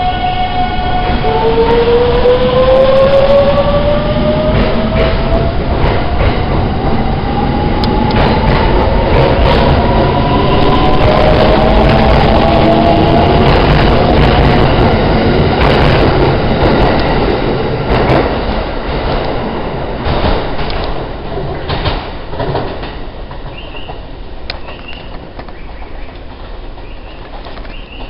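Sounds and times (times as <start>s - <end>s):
train wheel rumble: 0.0s - 28.0s
wheels clicking over rail joints: 20.0s - 28.0s.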